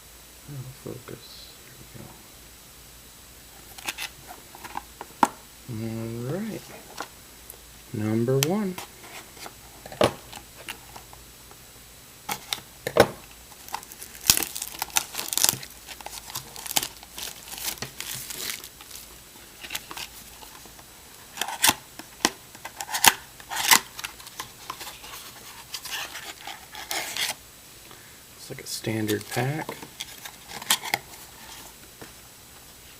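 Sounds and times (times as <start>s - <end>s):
plastic wrapping tearing and crinkling: 13.5s - 27.4s, 29.0s - 31.8s.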